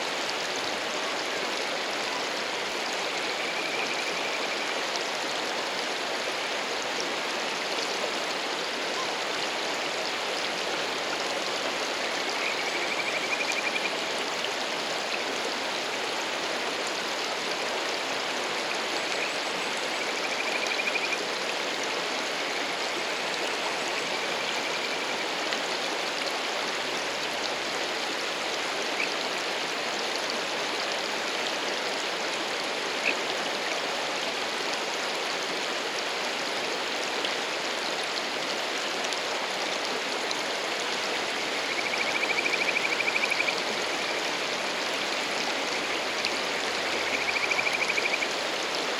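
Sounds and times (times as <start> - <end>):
stream rushing: 0.0 - 48.9
frog trilling calls: 12.2 - 13.9, 20.0 - 21.2, 41.6 - 43.6, 47.0 - 48.3.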